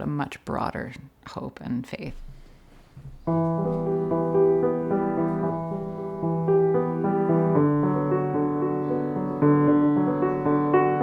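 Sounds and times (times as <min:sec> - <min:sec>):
slow piano chords: 0:03.0 - 0:11.0.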